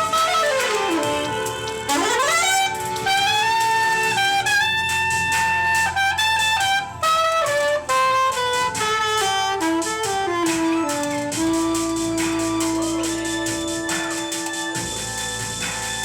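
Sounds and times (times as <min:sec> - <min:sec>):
saxophone melody: 0:00.0 - 0:16.0.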